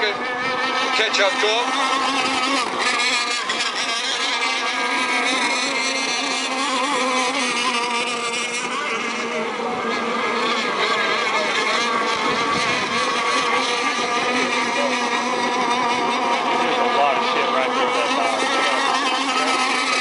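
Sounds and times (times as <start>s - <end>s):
model boat motors whining: 0.0s - 20.0s.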